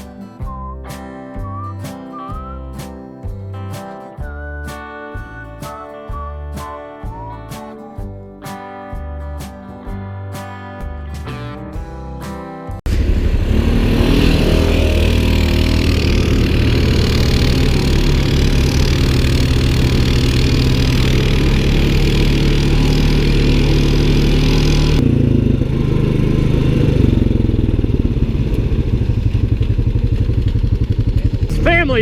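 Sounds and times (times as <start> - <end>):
off-road vehicle engine running: 12.8 - 32.0.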